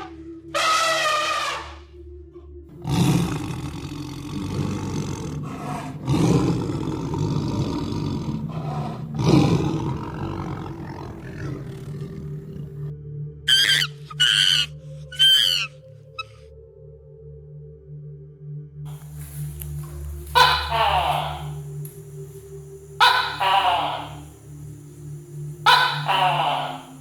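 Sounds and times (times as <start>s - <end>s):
big cat roaring and growling: 2.8s - 12.8s
short high-pitched animal calls: 18.9s - 27.0s.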